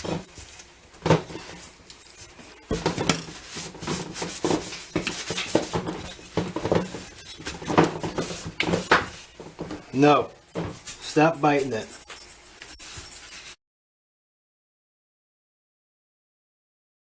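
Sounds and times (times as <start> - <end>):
clattering knocks: 2.7 - 11.2.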